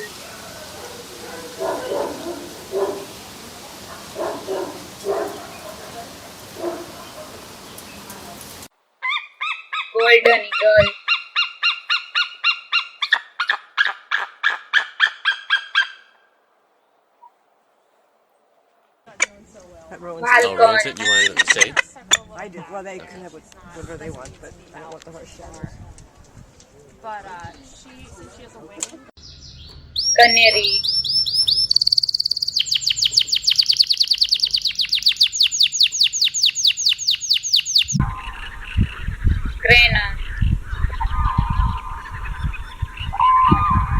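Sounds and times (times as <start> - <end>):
eagle yelping calls: 0.0 - 3.2, 3.9 - 7.6, 9.0 - 16.2, 30.0 - 43.9
canary singing trill: 0.0 - 8.3, 9.0 - 16.2, 29.2 - 43.9.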